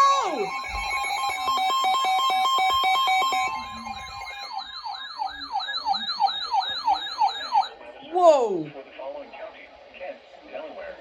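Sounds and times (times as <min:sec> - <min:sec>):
electronic siren: 0:00.0 - 0:07.8.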